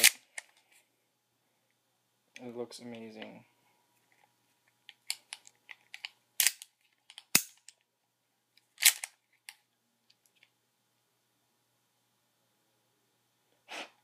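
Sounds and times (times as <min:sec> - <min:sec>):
pistol mechanism clicks and clacks: 0:05.0 - 0:07.8, 0:08.8 - 0:09.2.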